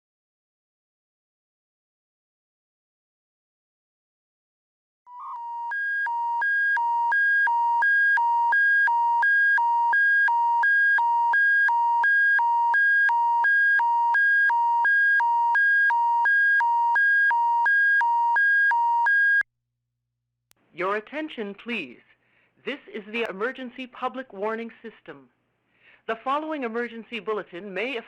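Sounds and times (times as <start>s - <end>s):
two-tone electronic alert signal: 5.1s - 19.4s.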